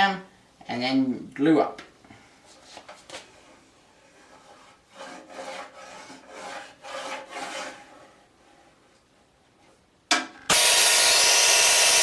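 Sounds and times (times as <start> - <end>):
hand tool scraping wood: 3.1 - 9.0.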